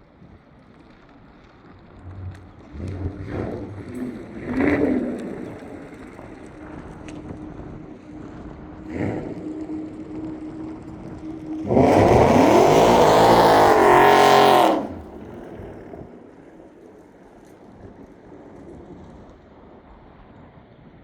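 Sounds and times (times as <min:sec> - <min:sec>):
car engine accelerating past: 0:02.0 - 0:17.1.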